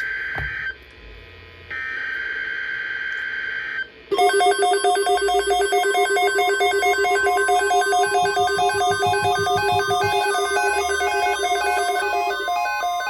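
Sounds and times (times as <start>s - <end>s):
electronic alert beeping: 4.2s - 13.0s
two-tone digital warble: 4.2s - 13.0s.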